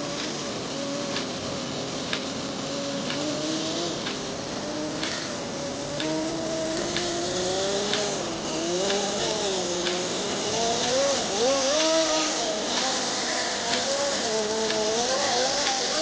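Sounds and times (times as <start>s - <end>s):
small nitro engine running: 0.0s - 16.0s
faint tick: 1.1s - 1.3s, 2.1s - 2.3s, 3.0s - 3.3s, 6.0s - 6.2s, 6.8s - 7.2s, 7.9s - 8.1s, 9.8s - 10.1s, 13.6s - 14.9s.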